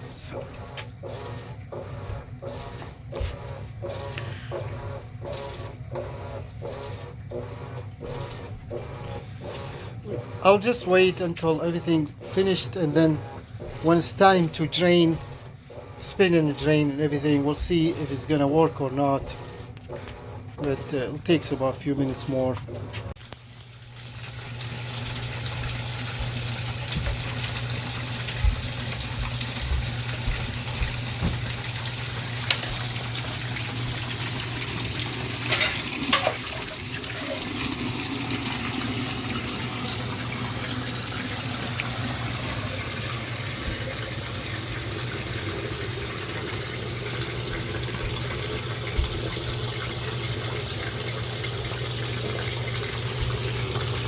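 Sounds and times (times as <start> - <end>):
low motor hum: 0.0 - 54.0
water rushing and splashing in drum: 23.8 - 54.0.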